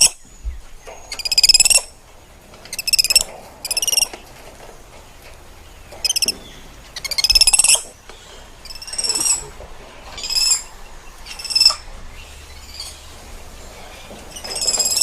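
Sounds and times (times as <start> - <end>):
monkey high-pitched chirping: 0.0 - 0.2, 1.1 - 1.9, 2.7 - 4.1, 6.0 - 6.3, 7.0 - 7.8, 8.6 - 9.4, 10.2 - 11.8.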